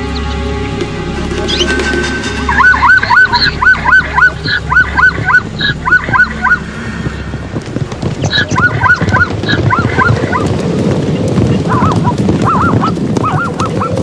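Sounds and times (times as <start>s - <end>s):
animal yelping: 8.2s - 10.5s, 11.7s - 14.0s.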